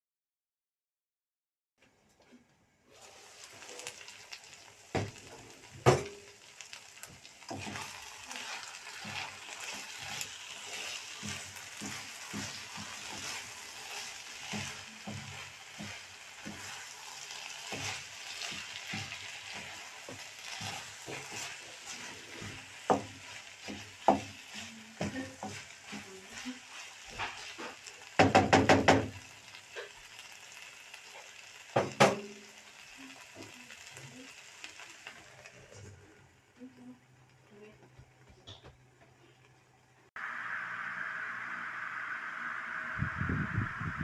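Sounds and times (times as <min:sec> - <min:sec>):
filling sizzling in a pan: 0:02.8 - 0:44.0
spoon scraping and knocking pan: 0:04.9 - 0:06.4, 0:07.0 - 0:30.0, 0:31.2 - 0:32.4.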